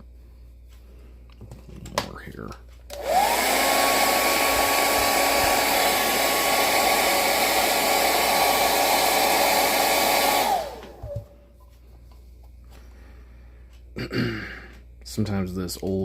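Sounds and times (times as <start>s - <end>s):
hair dryer blowing: 2.9s - 11.4s.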